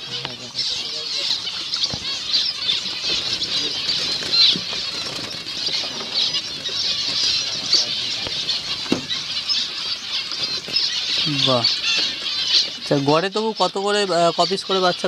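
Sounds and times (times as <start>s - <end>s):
finches chirping: 0.0s - 15.0s
soft knocks: 8.2s - 9.2s.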